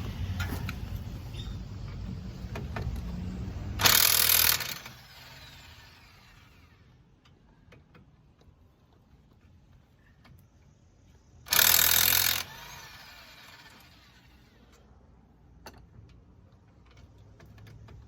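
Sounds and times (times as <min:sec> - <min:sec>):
power tool burst: 0:03.8 - 0:06.8, 0:11.5 - 0:14.4.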